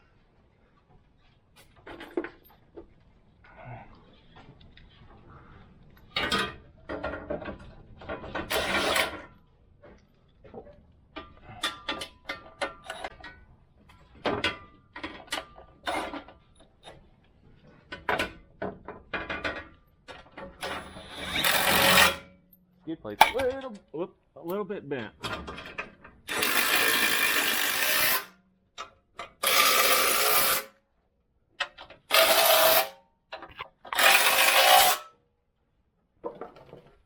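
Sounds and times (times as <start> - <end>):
metal tools clanking: 23.2 - 23.8.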